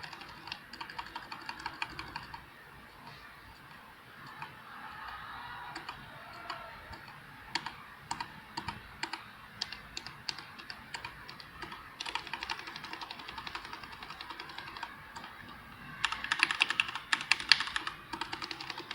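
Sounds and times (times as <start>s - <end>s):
mechanical keyboard typing: 0.0s - 2.4s, 5.7s - 18.9s.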